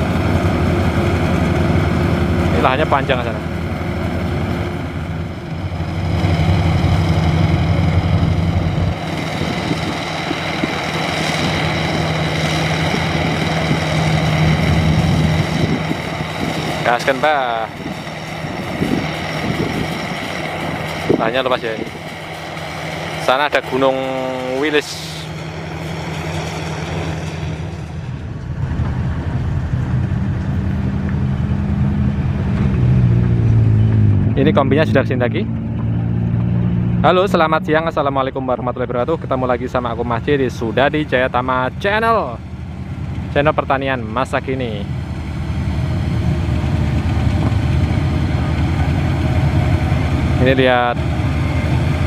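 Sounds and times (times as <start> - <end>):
diesel engine running: 0.0 - 52.0
machinery whine: 0.0 - 52.0.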